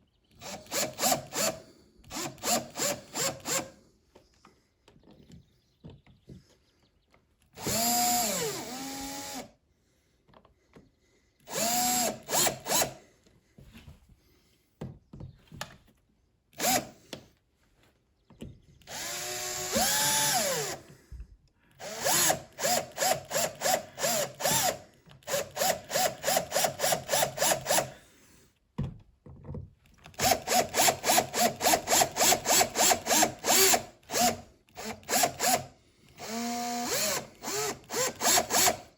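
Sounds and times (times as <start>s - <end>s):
power drill driving screws: 0.4s - 3.8s, 7.6s - 9.6s, 11.4s - 13.0s, 16.6s - 17.2s, 18.8s - 21.0s, 21.8s - 28.0s, 30.1s - 38.9s.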